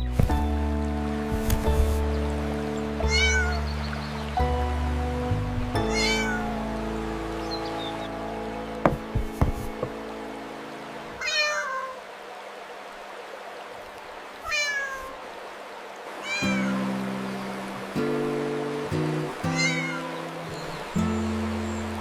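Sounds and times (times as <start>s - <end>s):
soft music with held chords: 0.0s - 11.2s, 16.4s - 22.0s
cat meowing: 3.1s - 3.6s, 5.9s - 6.5s, 11.2s - 12.0s, 14.4s - 15.1s, 16.2s - 16.8s, 19.5s - 20.1s.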